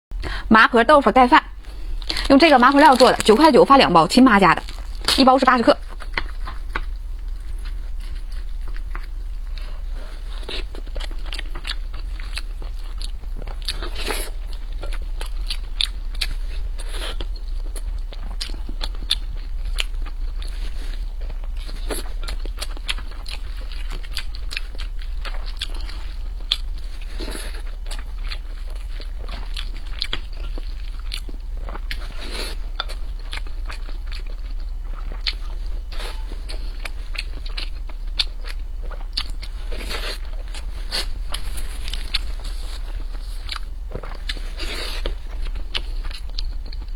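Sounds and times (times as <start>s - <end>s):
steady low hum: 0.1s - 46.9s
wet chewing and mouth smacks: 5.9s - 9.2s
chewing with wet mouth clicks: 5.9s - 9.8s, 10.4s - 20.6s, 21.2s - 46.9s.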